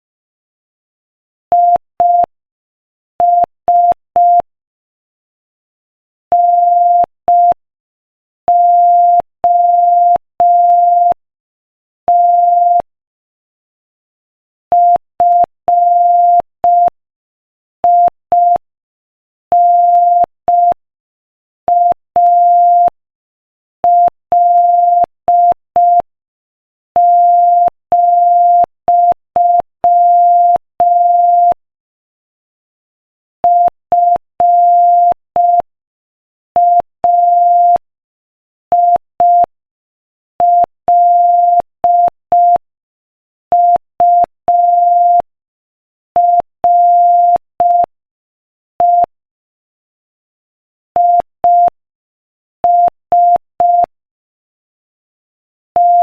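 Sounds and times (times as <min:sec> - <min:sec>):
morse code beeps: 0:27.3 - 0:31.6, 0:33.4 - 0:35.7, 0:36.6 - 0:37.8, 0:38.7 - 0:39.5, 0:40.4 - 0:42.6, 0:43.5 - 0:45.3, 0:46.2 - 0:47.9, 0:48.8 - 0:49.1, 0:51.0 - 0:51.8, 0:52.6 - 0:53.9, 0:55.8 - 0:56.0.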